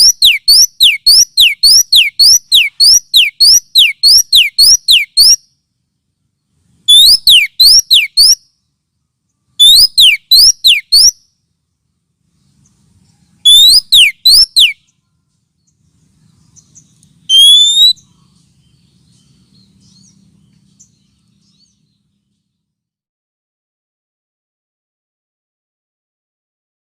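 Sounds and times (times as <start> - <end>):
bird whistling sharp notes: 0.0 - 5.5, 6.9 - 8.5, 9.6 - 11.3, 13.4 - 14.9, 16.6 - 18.2.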